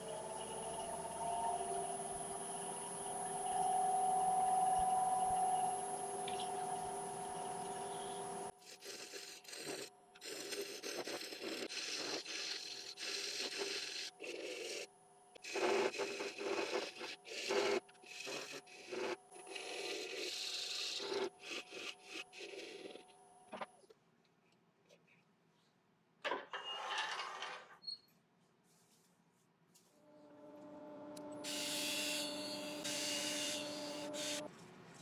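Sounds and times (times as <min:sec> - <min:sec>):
wood lathe humming: 0:30.2 - 0:34.5
tool scraping spinning wood: 0:31.2 - 0:34.5.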